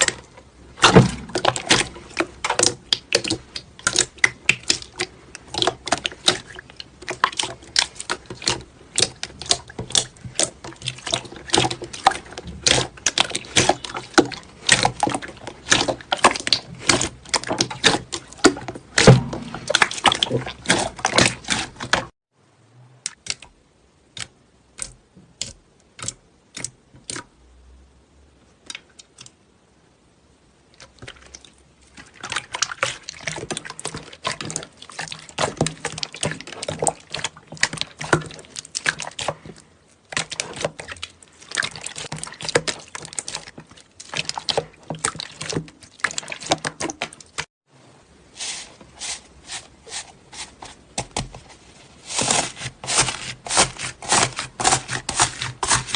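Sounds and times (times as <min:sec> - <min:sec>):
slime squelching and popping: 0:00.0 - 0:22.1, 0:30.8 - 0:47.5, 0:52.1 - 0:55.9.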